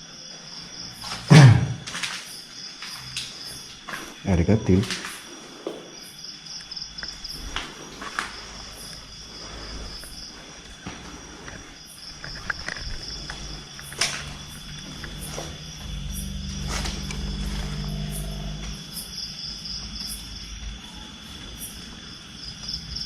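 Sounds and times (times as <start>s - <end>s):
crickets trilling: 0.0s - 23.0s.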